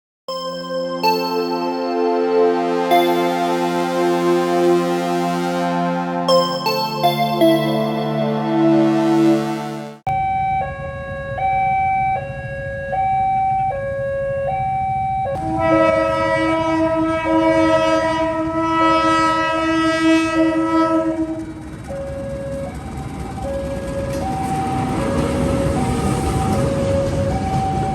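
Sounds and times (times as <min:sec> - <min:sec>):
level crossing alarm: 0:00.3 - 0:15.5, 0:21.7 - 0:27.9
train horn blast: 0:01.1 - 0:10.0, 0:15.4 - 0:21.5.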